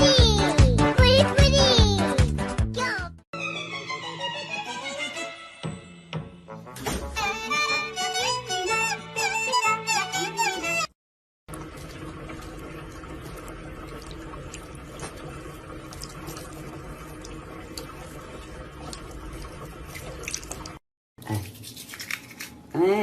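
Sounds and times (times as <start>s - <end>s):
running water: 11.5s - 20.8s
small drips: 11.5s - 20.8s.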